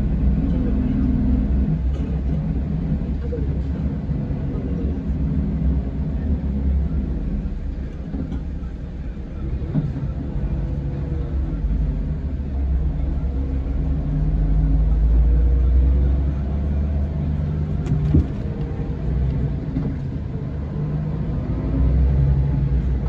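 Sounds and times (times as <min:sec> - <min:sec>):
diesel engine rumbling: 0:00.0 - 0:23.0
short knock: 0:17.8 - 0:18.6.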